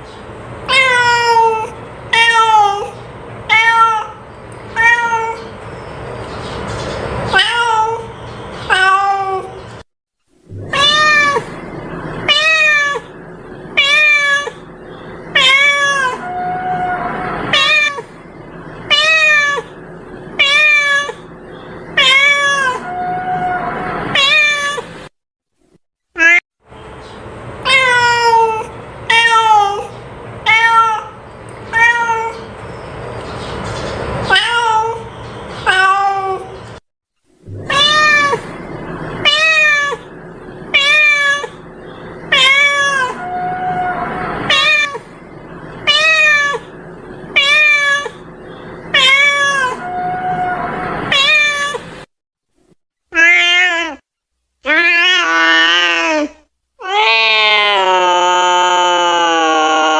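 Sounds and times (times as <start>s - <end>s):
cat meowing: 0.7s - 5.5s, 7.3s - 9.6s, 10.5s - 11.6s, 12.2s - 13.1s, 13.8s - 14.7s, 15.3s - 18.1s, 18.9s - 19.7s, 20.4s - 21.3s, 22.0s - 24.9s, 26.2s - 26.4s, 27.6s - 32.5s, 34.3s - 36.6s, 37.5s - 38.5s, 39.2s - 40.1s, 40.7s - 41.6s, 42.3s - 45.1s, 45.8s - 46.7s, 47.3s - 48.3s, 48.9s - 51.9s, 53.1s - 54.0s, 54.6s - 59.9s.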